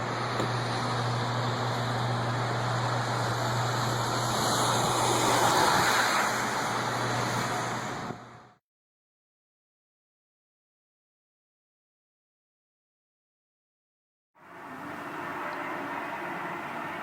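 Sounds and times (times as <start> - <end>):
low buzzing drone: 14.4 - 17.0
rushing noise: 14.4 - 17.0.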